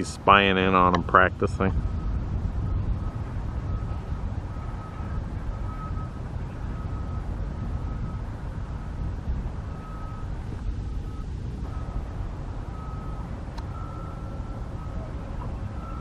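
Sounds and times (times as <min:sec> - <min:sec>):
steady low rumble: 0:00.0 - 0:16.0
backup alarm beeping: 0:09.7 - 0:10.3, 0:11.0 - 0:12.1, 0:12.7 - 0:15.1, 0:15.7 - 0:16.0.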